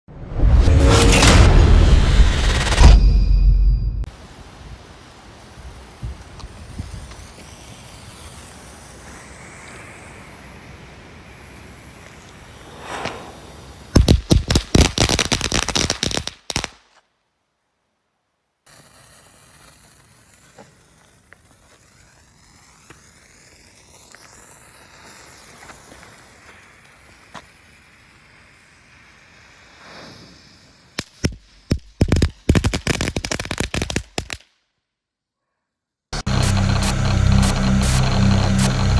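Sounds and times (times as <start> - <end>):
firework fuse hiss: 4.1 - 16.8, 18.6 - 34.4, 36.2 - 38.9
firework sharp bangs: 12.6 - 16.8.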